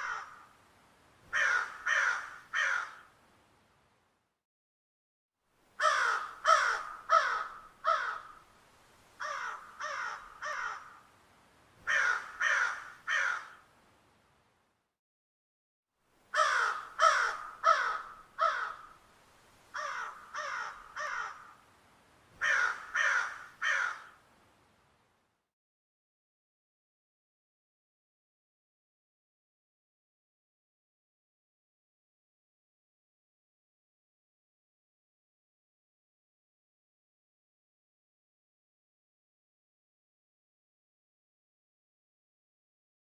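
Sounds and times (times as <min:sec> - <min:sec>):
crow cawing: 0:00.0 - 0:00.5, 0:01.3 - 0:03.2, 0:05.8 - 0:08.5, 0:09.2 - 0:11.1, 0:11.8 - 0:13.7, 0:16.3 - 0:19.0, 0:19.7 - 0:21.6, 0:22.4 - 0:24.2.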